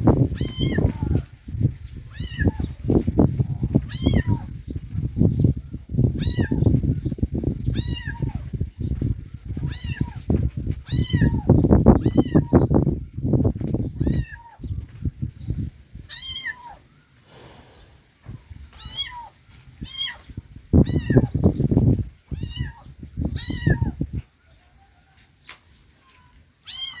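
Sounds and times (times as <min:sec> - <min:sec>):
kittens mewing: 0:10.9 - 0:12.6, 0:16.1 - 0:17.5, 0:18.8 - 0:21.4.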